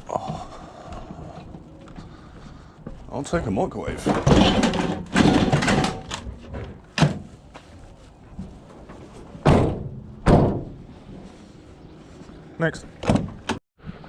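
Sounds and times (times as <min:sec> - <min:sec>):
microwave clattering and knocking: 0:04.0 - 0:07.2
loud thuds: 0:09.4 - 0:10.8.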